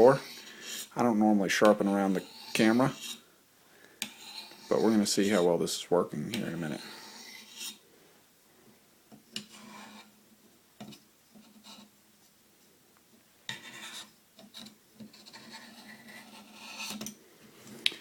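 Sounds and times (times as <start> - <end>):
knife scraping sharpening stone: 0.0 - 1.0, 1.7 - 3.2, 4.0 - 4.8, 6.5 - 7.8, 9.4 - 10.1, 13.5 - 17.0.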